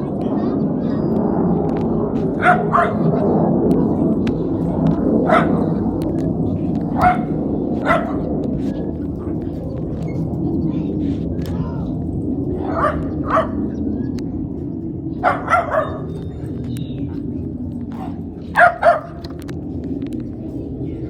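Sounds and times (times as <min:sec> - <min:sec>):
low background rumble: 0:00.0 - 0:21.0
dog barking: 0:02.3 - 0:03.2, 0:05.2 - 0:05.8, 0:06.9 - 0:08.3, 0:12.6 - 0:13.7, 0:15.2 - 0:16.3, 0:17.9 - 0:19.3.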